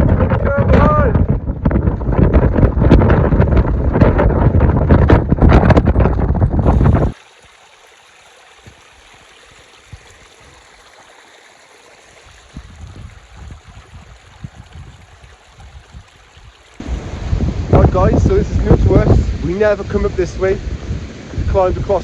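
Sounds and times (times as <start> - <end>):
wind buffeting microphone: 0.0 - 7.2, 12.2 - 22.0
mountain stream running: 5.9 - 22.0.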